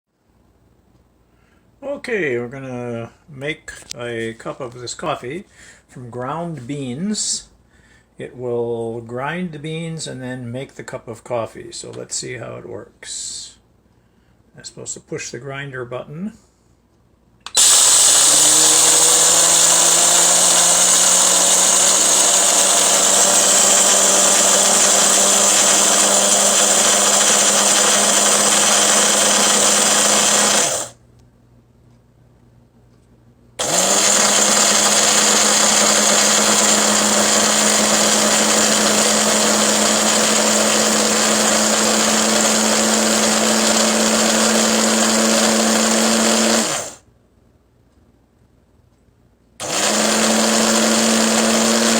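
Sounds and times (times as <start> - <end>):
coffee grinder motor whirring: 17.5 - 31.0, 33.6 - 47.0, 49.6 - 51.9.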